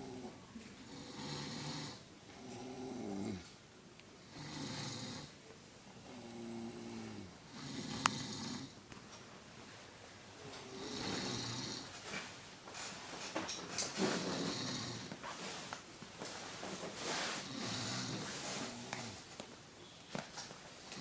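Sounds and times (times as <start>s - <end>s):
person snoring: 0.0s - 3.5s, 4.2s - 5.3s, 6.0s - 8.8s, 10.6s - 11.9s, 14.2s - 15.2s, 17.4s - 19.2s.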